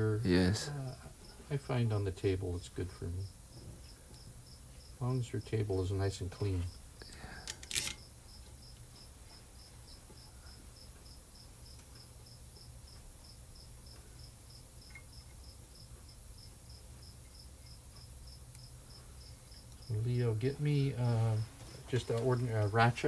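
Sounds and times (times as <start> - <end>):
insect chirping: 0.0 - 23.0
low steady hum: 0.0 - 23.0.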